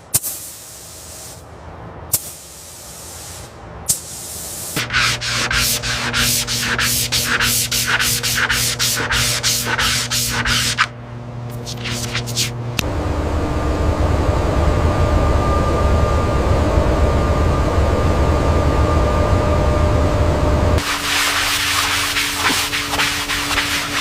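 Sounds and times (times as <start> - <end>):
steady hum: 0.0 - 24.0
abrasive rubbing like sanding: 4.6 - 10.9, 11.5 - 12.6, 20.8 - 24.0.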